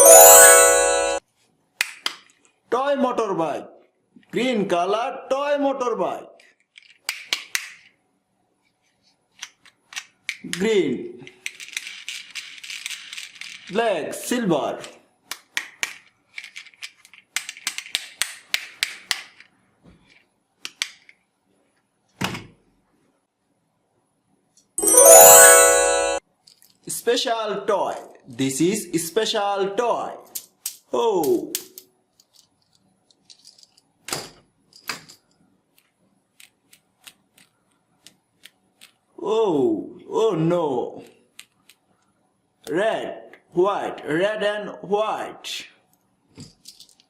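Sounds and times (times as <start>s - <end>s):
plastic toys clicking: 11.3s - 13.7s, 15.3s - 19.5s.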